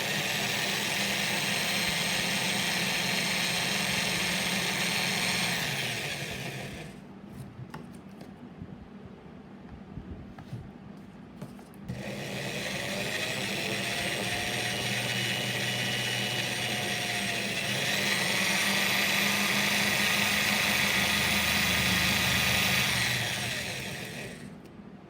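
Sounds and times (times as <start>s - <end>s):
power tool whine: 0.0s - 7.0s, 11.9s - 24.6s.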